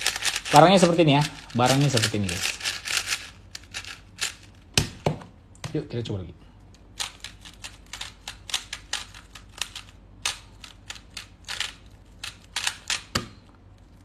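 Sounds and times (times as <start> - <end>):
rubik's cube clicking: 7.0 - 13.3.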